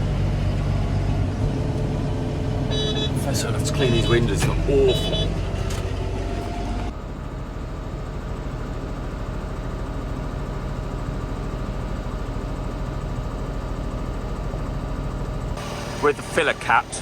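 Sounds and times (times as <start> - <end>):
tractor diesel engine idling: 0.0 - 17.0.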